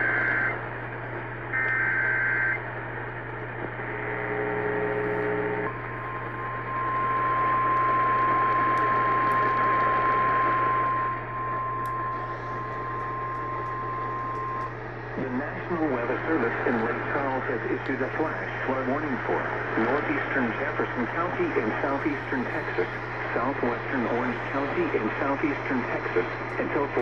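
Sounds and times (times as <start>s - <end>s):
radio hiss and hum: 0.0s - 27.0s.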